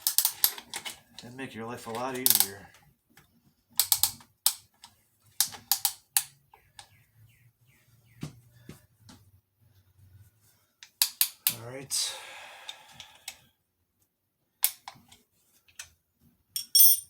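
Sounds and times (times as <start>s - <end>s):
sharp metal clicks and knocks: 0.0s - 1.0s, 1.9s - 2.6s, 3.8s - 4.6s, 5.4s - 6.4s.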